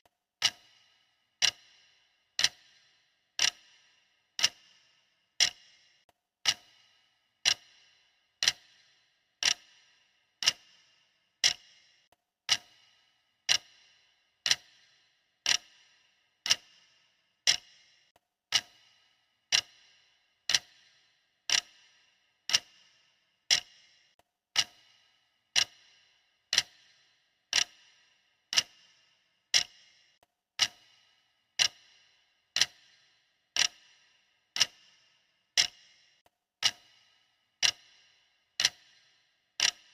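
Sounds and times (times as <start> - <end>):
stopwatch ticking: 0.0 - 39.9.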